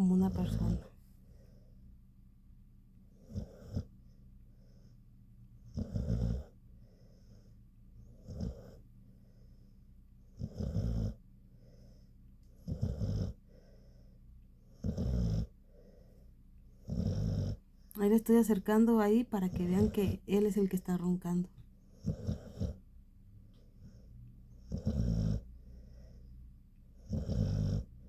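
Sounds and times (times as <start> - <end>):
dog snoring: 3.1 - 4.9, 5.6 - 9.7, 10.3 - 17.7, 21.9 - 22.9, 23.5 - 26.3, 26.9 - 28.0.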